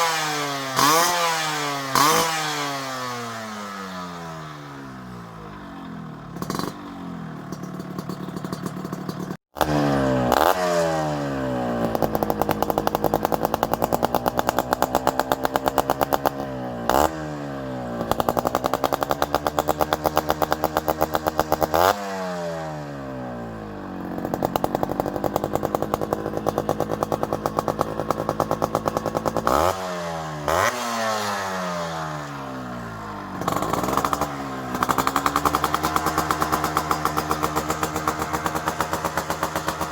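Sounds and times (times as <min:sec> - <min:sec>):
motorcycle engine revving: 0:00.0 - 0:39.9
exhaust cracks: 0:02.0 - 0:21.9, 0:23.6 - 0:29.8, 0:32.2 - 0:39.9.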